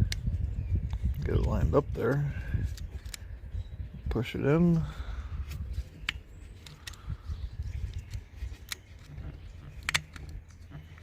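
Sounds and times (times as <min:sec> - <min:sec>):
small plastic clicks: 0:06.0 - 0:11.0.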